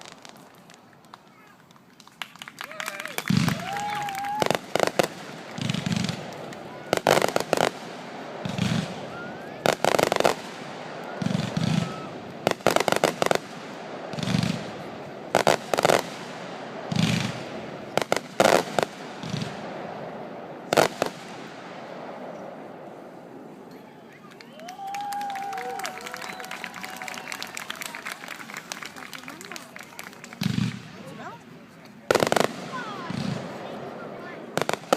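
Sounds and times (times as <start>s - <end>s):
fireworks thuds and cracking bangs: 3.3s - 9.0s, 11.2s - 19.8s, 30.3s - 31.0s.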